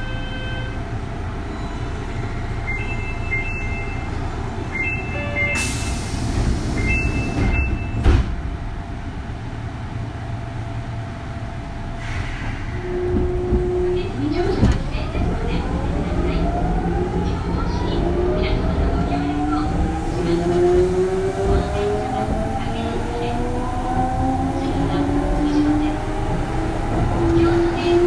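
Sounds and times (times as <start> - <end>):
train interior rumble: 0.0 - 28.0
loud thump: 8.0 - 8.6.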